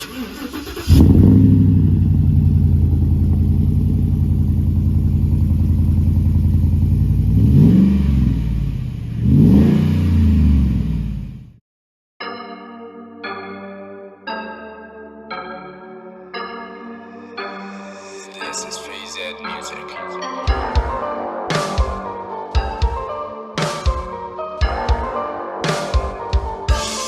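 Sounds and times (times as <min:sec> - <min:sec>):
engine idling and revving: 0:00.0 - 0:11.6.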